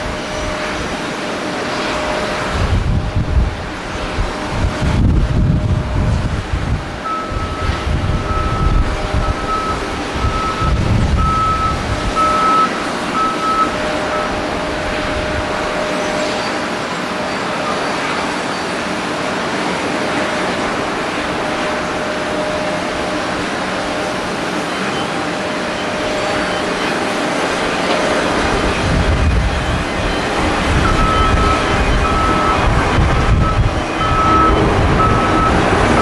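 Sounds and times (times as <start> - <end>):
jet engine noise: 0.0 - 36.0
wind buffeting microphone: 0.0 - 36.0
repeating electronic beep: 7.0 - 16.6, 29.3 - 36.0.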